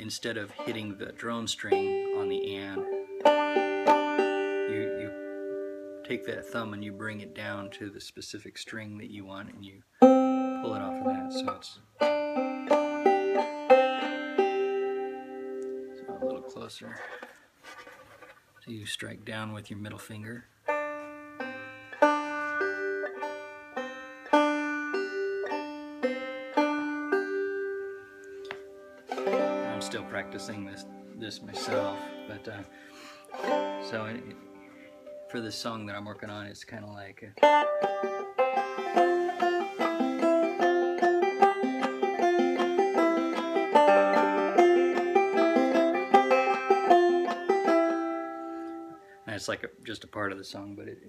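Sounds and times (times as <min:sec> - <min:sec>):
banjo plucked notes: 0:00.0 - 0:08.0, 0:09.0 - 0:17.8, 0:19.9 - 0:51.0.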